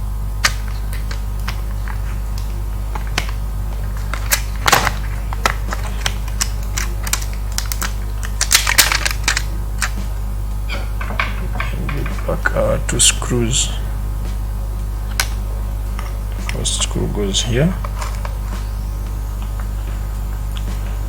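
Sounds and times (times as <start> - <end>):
low mains hum: 0.0 - 21.0
plastic laptop parts clicking: 0.4 - 10.0.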